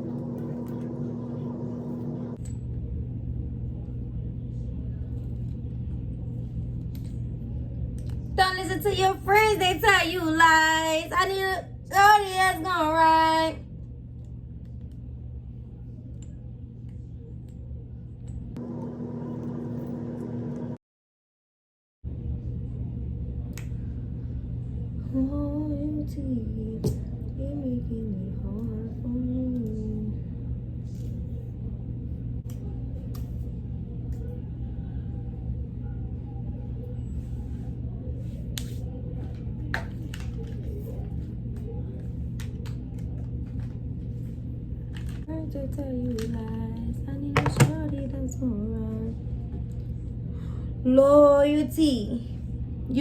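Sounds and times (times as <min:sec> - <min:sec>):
hum with steady tone: 0:00.0 - 0:20.8, 0:22.1 - 0:53.0
low steady rumble: 0:00.0 - 0:20.8, 0:22.1 - 0:53.0.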